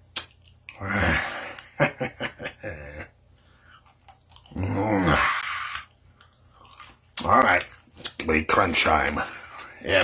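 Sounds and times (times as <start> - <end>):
man burping loudly: 4.4 - 5.8.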